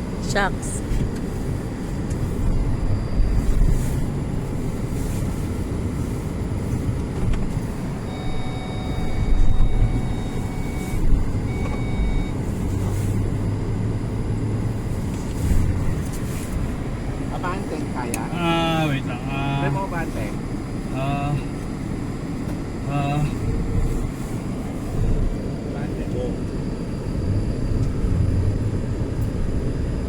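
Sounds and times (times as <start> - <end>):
car engine rumbling: 0.0 - 30.0
electronic beep tone: 8.0 - 12.8.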